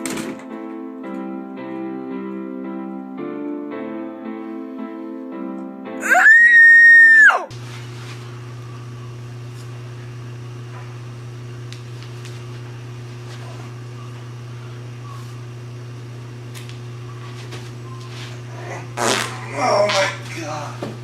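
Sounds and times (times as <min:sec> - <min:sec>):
low electrical hum: 0:07.5 - 0:21.0.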